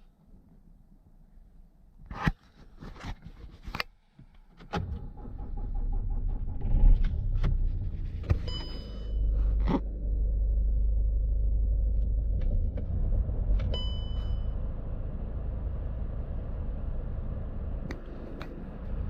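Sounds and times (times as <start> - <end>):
diesel engine rumbling: 5.0 - 19.0.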